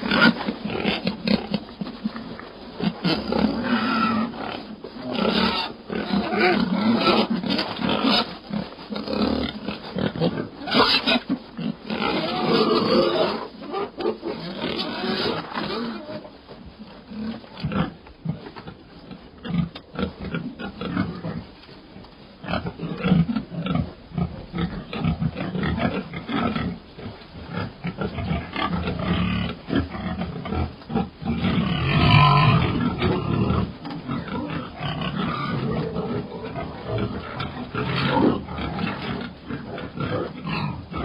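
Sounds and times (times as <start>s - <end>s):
pig grunting: 22.5s - 41.0s.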